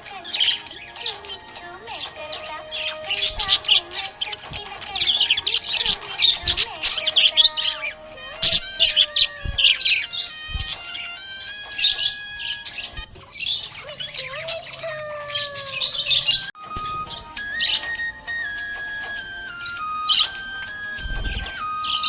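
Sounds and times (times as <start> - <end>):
background music: 0.0 - 14.6, 15.2 - 22.0
budgerigar chirping: 0.0 - 22.0.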